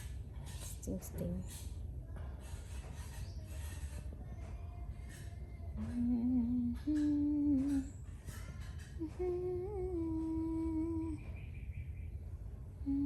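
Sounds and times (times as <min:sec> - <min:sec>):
low steady rumble: 0:04.1 - 0:13.0
person humming: 0:05.8 - 0:07.9, 0:09.0 - 0:11.2.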